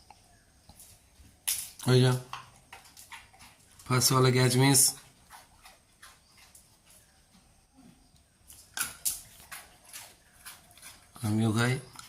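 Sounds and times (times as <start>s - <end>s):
dog crunching a biscuit: 8.5s - 12.0s.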